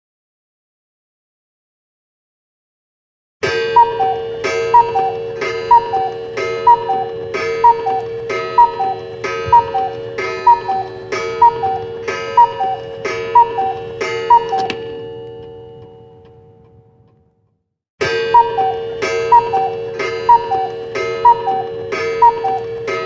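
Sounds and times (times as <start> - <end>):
cuckoo clock call: 3.4 - 16.1, 18.1 - 23.0
ringing chime tone: 3.4 - 16.8, 18.1 - 23.0.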